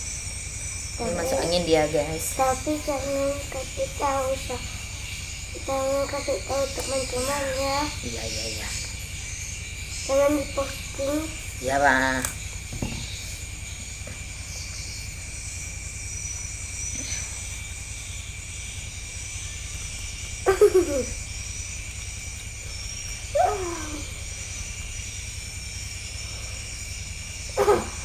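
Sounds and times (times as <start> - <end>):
high hiss: 0.0 - 28.0
child moaning: 23.4 - 24.2.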